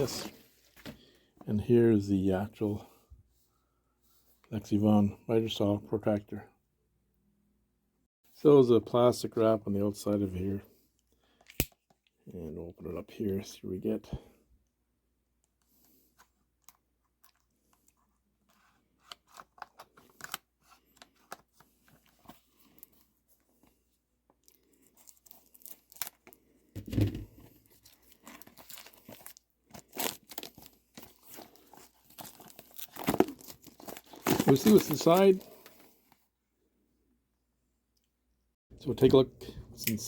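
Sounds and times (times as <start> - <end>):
plastic wrapping crinkling: 27.6 - 35.8.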